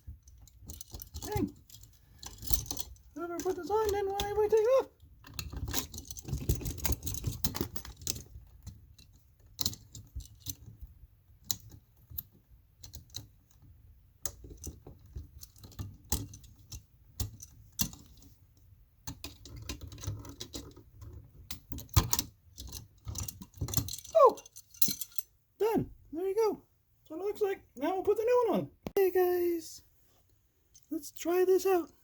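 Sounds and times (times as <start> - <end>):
handling of outlet and wires: 0.0 - 25.3
metallic clicks and scrapes of tools: 0.3 - 8.3, 19.1 - 25.4.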